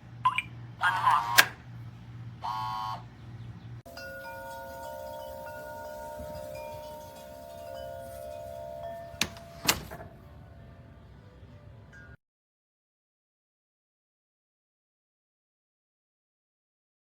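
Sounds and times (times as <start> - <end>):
chime tones ringing: 3.9 - 9.8.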